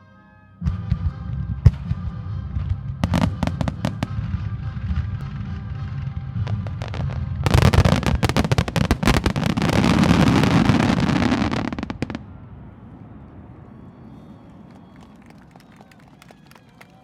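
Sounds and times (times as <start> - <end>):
fireworks booming and crackling: 0.6 - 12.4.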